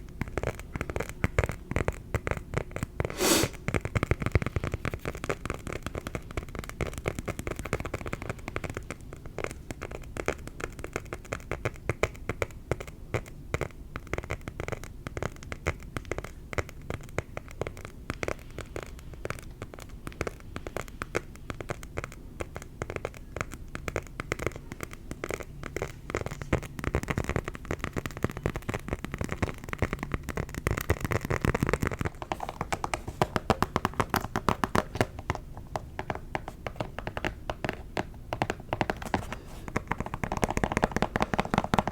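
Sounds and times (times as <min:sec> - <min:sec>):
tapping on a shoe: 0:25.3 - 0:41.9
tapping on leather tag: 0:32.1 - 0:41.9.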